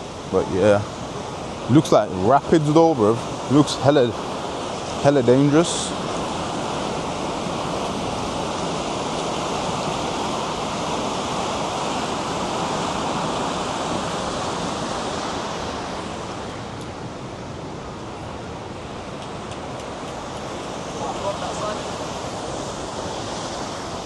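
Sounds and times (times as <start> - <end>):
river rapids rushing: 0.0 - 24.0.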